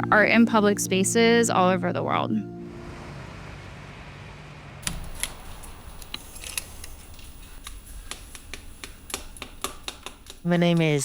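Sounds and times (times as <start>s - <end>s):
mosaic pieces clicking: 4.8s - 10.5s
quiet hiss: 4.8s - 11.0s.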